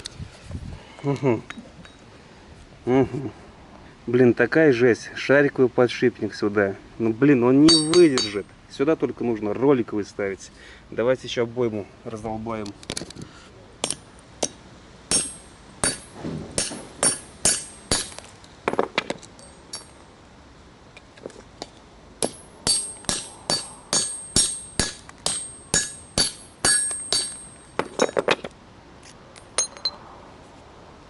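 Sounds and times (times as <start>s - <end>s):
hammer striking metal: 7.7s - 8.4s, 13.8s - 18.2s, 22.2s - 28.1s.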